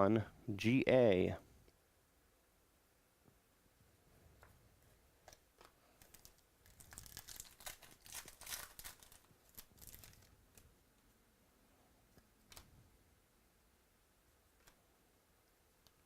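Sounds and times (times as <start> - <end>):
plastic wrapping crinkling: 5.6 - 10.7.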